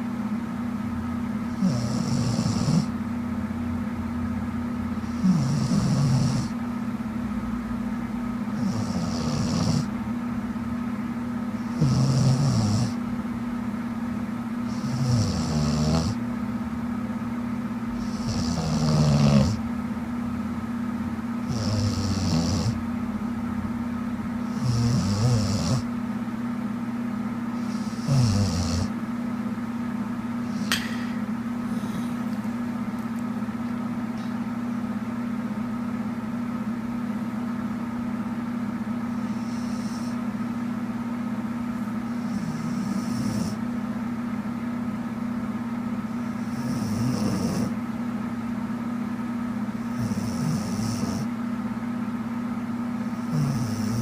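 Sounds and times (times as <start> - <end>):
steady hum: 0.0 - 54.0
woman snoring: 1.6 - 2.9, 5.1 - 6.5, 8.6 - 9.9, 11.6 - 13.0, 14.7 - 16.2, 18.0 - 19.6, 21.5 - 22.8, 24.5 - 25.8, 27.6 - 28.9, 46.5 - 47.8, 50.0 - 51.3, 53.2 - 54.0
sharp click: 30.7 - 31.1.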